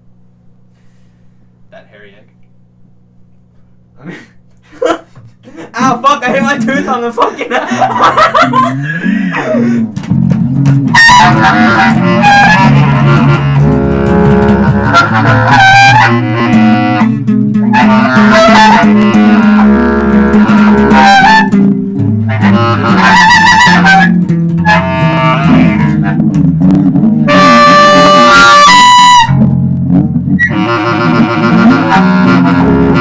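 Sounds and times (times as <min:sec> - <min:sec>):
low bass line: 0:07.7 - 0:33.0.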